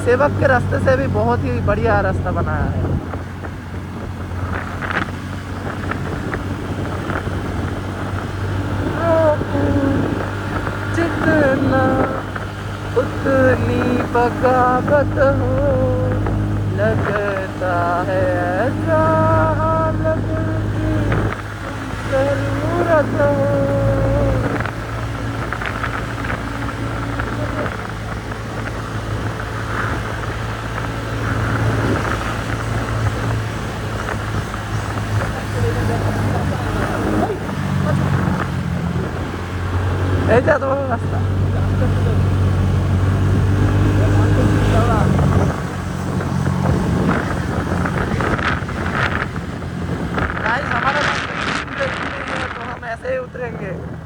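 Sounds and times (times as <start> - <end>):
scooter engine running: 0.0 - 54.0
person speaking: 8.8 - 10.1, 10.8 - 12.4, 50.4 - 53.9.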